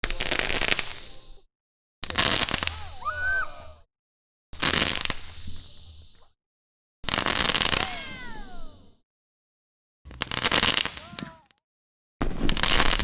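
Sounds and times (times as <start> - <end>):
fireworks crackling hiss: 0.0 - 1.4, 2.0 - 3.8, 4.6 - 6.4, 7.1 - 8.9, 10.1 - 11.6, 12.2 - 13.0.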